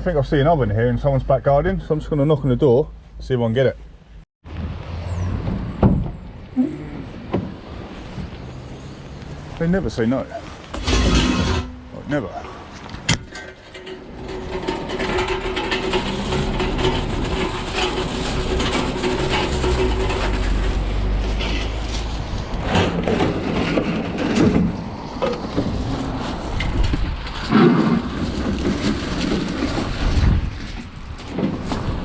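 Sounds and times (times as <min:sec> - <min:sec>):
wind buffeting microphone: 0:22.0 - 0:32.0.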